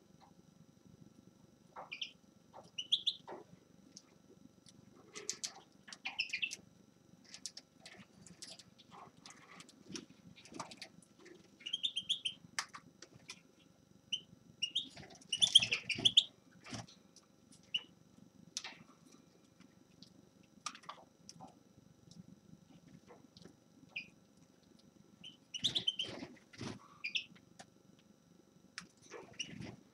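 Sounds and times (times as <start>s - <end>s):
finch chirping: 1.8s - 3.4s, 6.0s - 6.6s, 11.6s - 12.4s, 14.1s - 16.3s, 23.9s - 24.1s, 25.2s - 26.2s, 27.0s - 27.3s.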